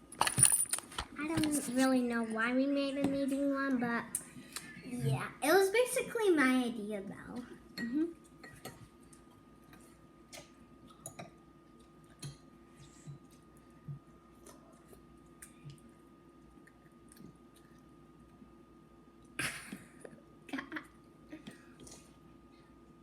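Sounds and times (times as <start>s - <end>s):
low steady hum: 0.0s - 23.0s
eating and chewing: 8.2s - 18.5s.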